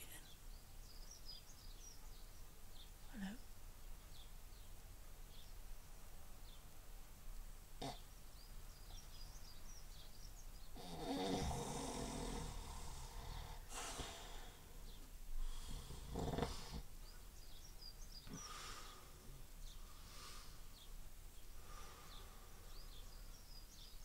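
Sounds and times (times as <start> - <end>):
faint bird chirps: 0.0 - 6.7, 7.8 - 24.0
man snoring: 10.8 - 14.6, 15.4 - 16.9
sharp snort: 10.8 - 14.7, 15.5 - 16.9.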